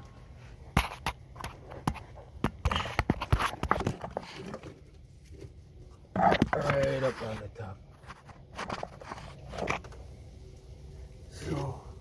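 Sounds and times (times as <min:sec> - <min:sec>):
low steady hum: 0:00.0 - 0:12.0.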